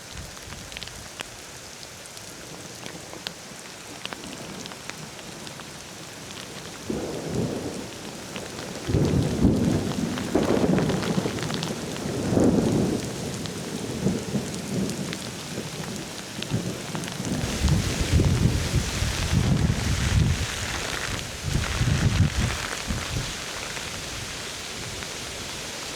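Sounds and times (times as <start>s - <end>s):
steady rain falling: 0.0s - 25.9s
thunder rumbling: 8.8s - 13.1s, 17.2s - 25.0s.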